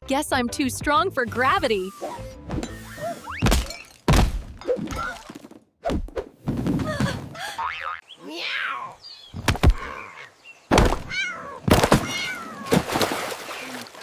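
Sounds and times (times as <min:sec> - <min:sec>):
high animal-like cries: 0:07.8 - 0:09.0, 0:09.7 - 0:10.4, 0:11.1 - 0:12.7.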